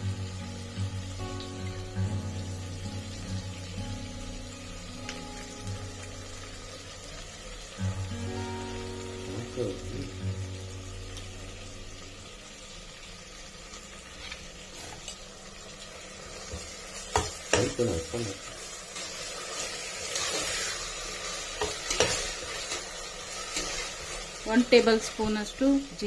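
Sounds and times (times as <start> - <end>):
food sizzling in a pan: 0.0 - 26.0
spoon scraping and knocking pan: 21.5 - 22.9.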